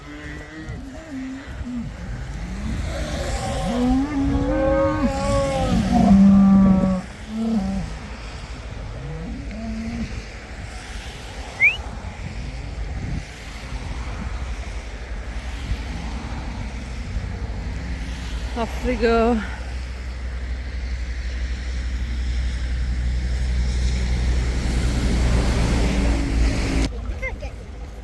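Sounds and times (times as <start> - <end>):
cattle mooing: 0.0 - 8.2
steady low rumble: 0.0 - 28.0.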